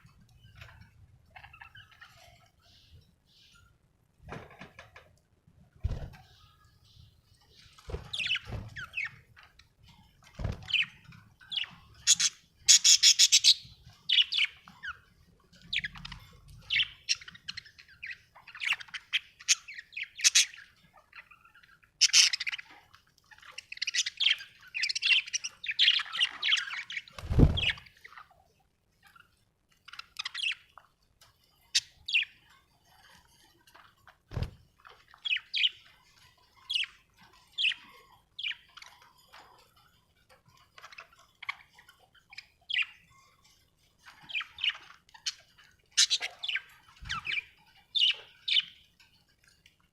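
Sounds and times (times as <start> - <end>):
budgerigar chirping: 11.6 - 14.6.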